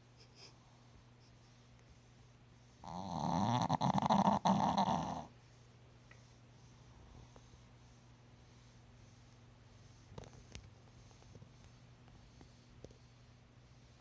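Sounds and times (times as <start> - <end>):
quiet breathing: 0.0 - 3.1, 5.2 - 14.0
loud snore: 2.8 - 5.3.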